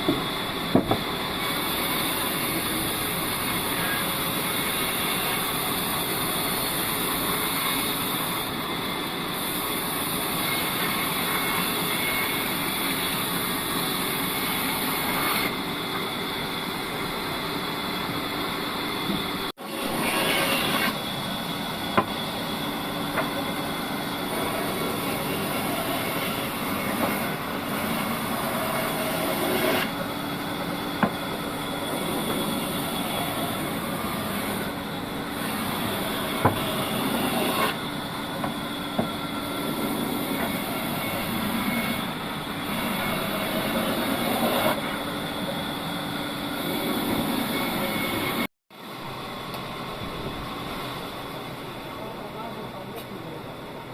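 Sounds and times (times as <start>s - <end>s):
bandsaw cutting wood: 19.7s - 21.1s, 24.2s - 37.9s, 39.5s - 45.0s.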